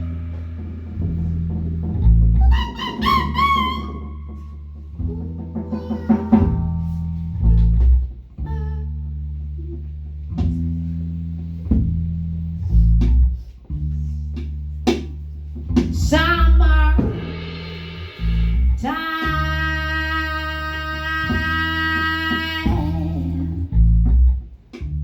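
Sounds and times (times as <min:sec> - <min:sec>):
drum hits: 0:00.0 - 0:07.0
guitar: 0:00.0 - 0:11.0
bass guitar: 0:00.0 - 0:25.0.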